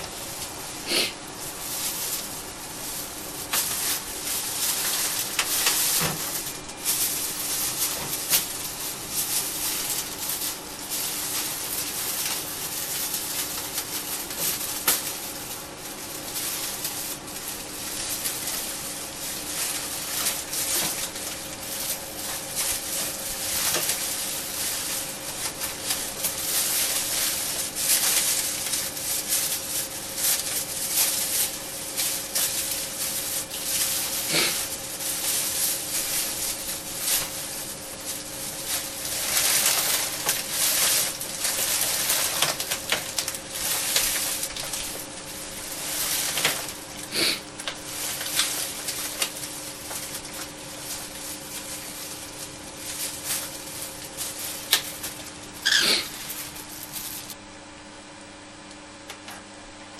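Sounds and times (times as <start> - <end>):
steady low hum: 0.0 - 59.9
crackling and clicking: 3.4 - 46.8.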